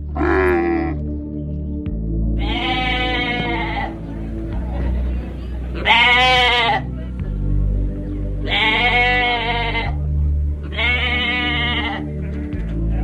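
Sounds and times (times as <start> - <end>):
background music with low notes: 0.0 - 13.0
sheep or goat bleating: 0.2 - 1.0, 2.4 - 4.0, 5.8 - 6.9, 8.4 - 10.0, 10.7 - 12.1.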